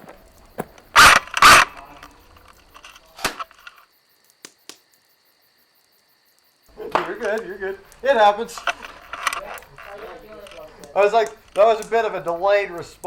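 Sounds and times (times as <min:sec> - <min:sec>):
airsoft gunshots: 0:00.6 - 0:01.8
faint clicks: 0:05.8 - 0:13.0.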